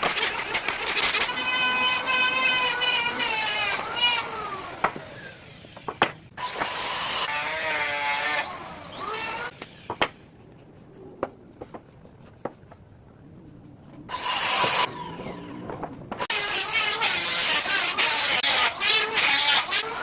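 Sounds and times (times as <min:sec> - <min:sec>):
power tool running: 0:00.0 - 0:09.9.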